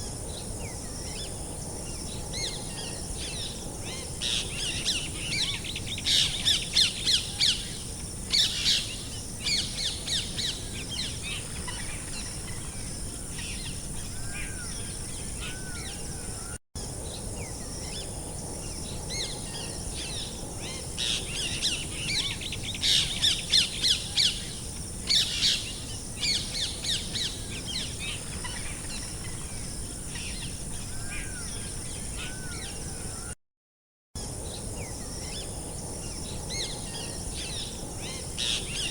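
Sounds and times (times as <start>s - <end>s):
steady high-pitched hiss: 0.0s - 33.3s, 34.2s - 38.9s.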